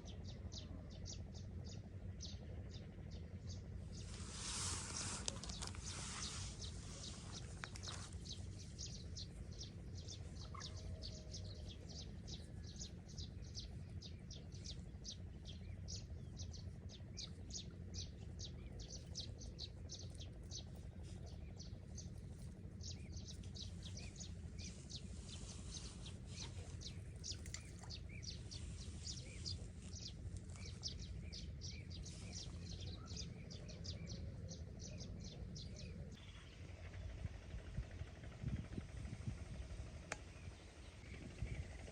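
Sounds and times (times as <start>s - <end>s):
low steady rumble: 0.0s - 41.9s
bird chirping: 22.8s - 36.5s.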